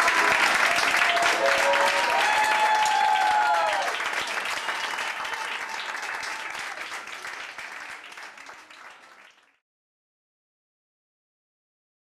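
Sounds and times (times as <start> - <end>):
audience applauding: 0.0 - 9.6.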